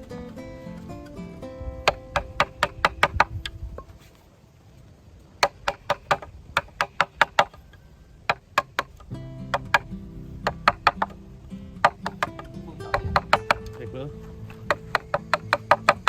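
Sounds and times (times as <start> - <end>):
tool knocking on bamboo: 1.8 - 3.3, 5.4 - 7.6, 8.3 - 11.2, 11.8 - 13.8, 14.5 - 16.0.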